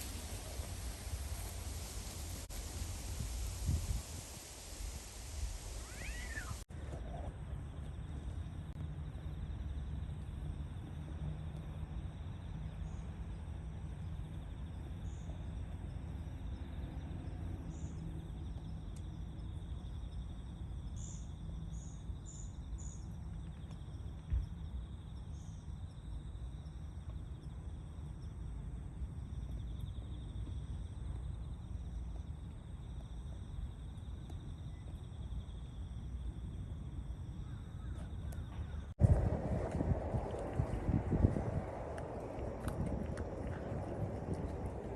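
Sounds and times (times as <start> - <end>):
faint high insect drone: 0.0 - 44.9
low rumble: 38.6 - 44.9.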